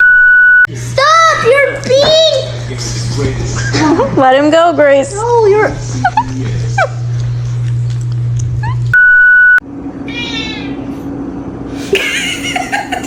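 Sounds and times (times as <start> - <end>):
low steady hum: 0.0 - 13.0
electronic beep: 9.0 - 9.6
cat meowing: 10.0 - 10.9.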